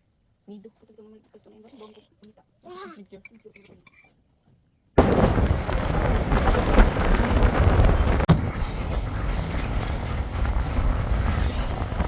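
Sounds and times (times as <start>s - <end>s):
wind buffeting microphone: 5.0s - 12.0s.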